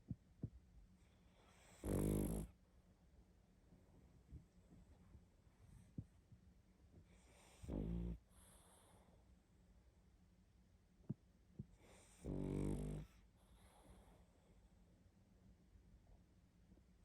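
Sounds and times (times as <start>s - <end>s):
dog snoring: 1.3s - 2.6s, 7.1s - 9.1s, 11.6s - 14.2s.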